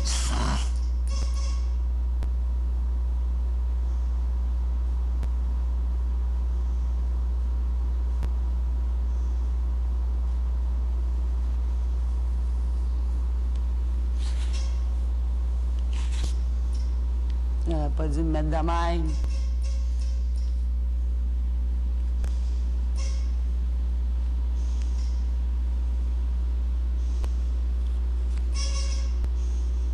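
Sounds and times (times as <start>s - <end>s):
low hum: 0.0s - 29.9s
buzzer: 0.8s - 1.9s, 14.4s - 14.9s, 19.0s - 20.5s, 22.9s - 23.5s, 28.5s - 29.4s.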